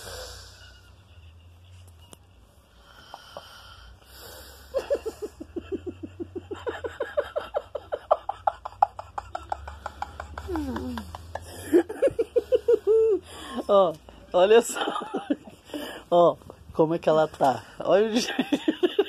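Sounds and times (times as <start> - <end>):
woman snoring: 0.0 - 0.8, 10.4 - 11.4.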